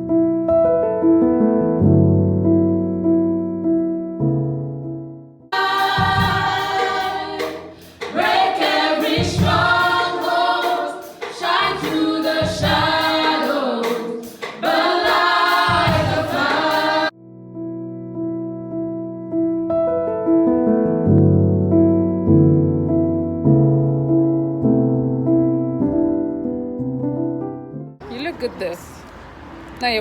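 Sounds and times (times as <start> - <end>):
soft piano music: 0.0 - 11.7, 15.7 - 28.0
gospel choir over deep beat: 5.5 - 17.1.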